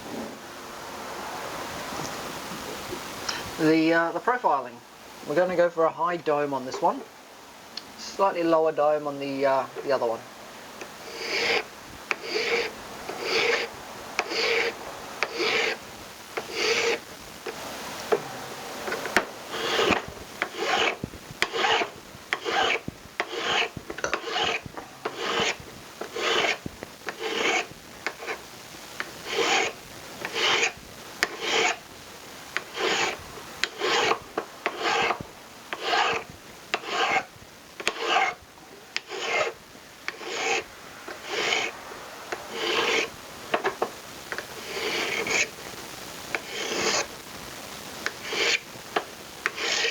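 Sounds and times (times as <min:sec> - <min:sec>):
hand file rasping on metal: 0:11.0 - 0:15.8, 0:16.4 - 0:17.0, 0:18.9 - 0:28.4, 0:29.2 - 0:31.8, 0:32.6 - 0:38.4, 0:39.0 - 0:41.7, 0:42.4 - 0:45.5, 0:46.3 - 0:47.1, 0:48.0 - 0:48.6, 0:49.4 - 0:49.9.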